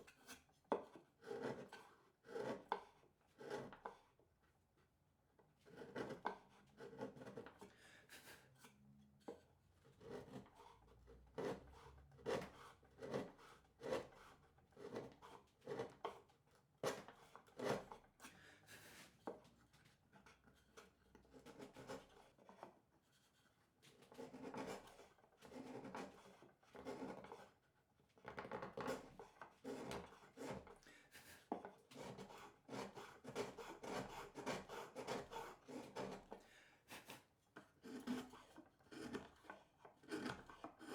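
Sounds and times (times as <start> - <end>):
hand tool scraping wood: 0.2 - 4.0, 5.6 - 7.7, 10.0 - 10.8, 11.4 - 16.2, 20.2 - 23.3, 23.9 - 27.6, 28.4 - 36.5, 37.1 - 40.9.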